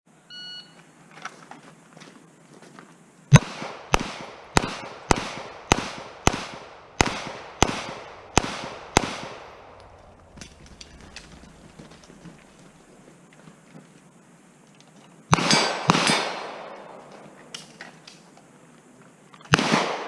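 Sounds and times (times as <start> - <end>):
pistol shots with echo: 3.3 - 9.9, 15.3 - 17.0, 19.5 - 20.0.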